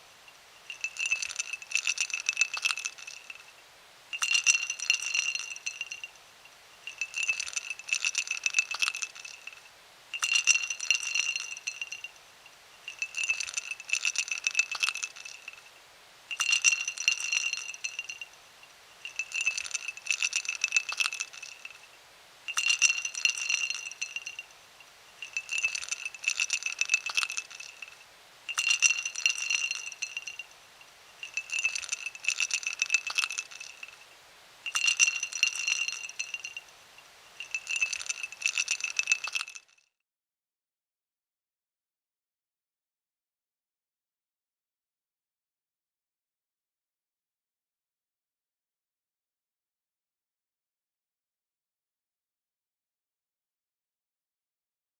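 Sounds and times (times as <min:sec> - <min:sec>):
glass ringing: 0:00.0 - 0:39.7
ice cubes clinking in a glass: 0:00.6 - 0:03.5, 0:04.1 - 0:06.2, 0:06.8 - 0:12.2, 0:12.8 - 0:15.7, 0:16.3 - 0:18.4, 0:19.0 - 0:24.5, 0:25.2 - 0:36.7, 0:37.3 - 0:39.8.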